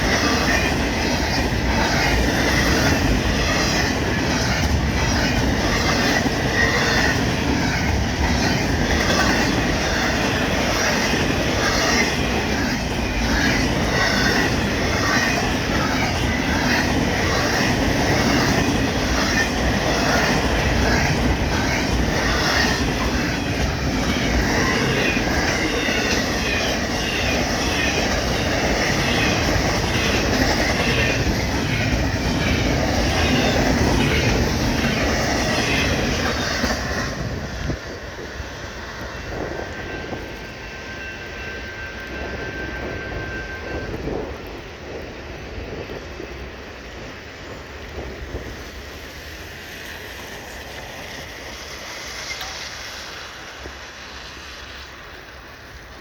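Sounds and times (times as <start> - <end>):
train wheels clattering over rails: 0.0 - 54.3
wheel squeal: 39.0 - 44.2.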